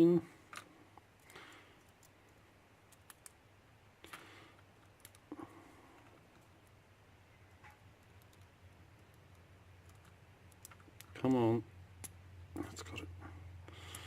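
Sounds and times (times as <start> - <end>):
faint metal clicks and scrapes: 4.0 - 6.8, 7.5 - 11.2.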